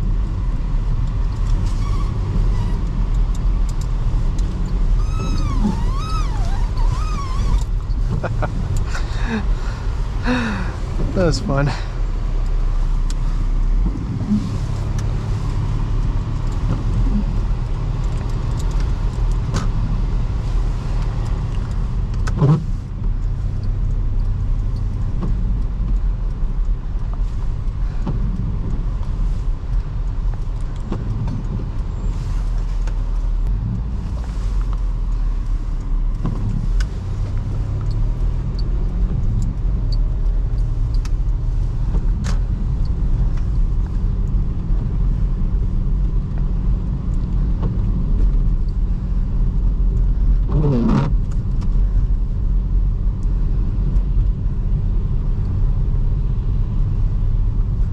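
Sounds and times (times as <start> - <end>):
car engine and tyre hum: 0.0 - 57.9
short rising squeak: 4.9 - 8.0
light clicks: 21.0 - 44.9.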